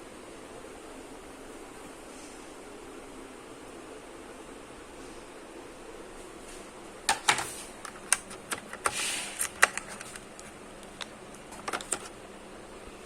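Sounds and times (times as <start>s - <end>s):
packaging rustling slide: 7.2s - 12.2s.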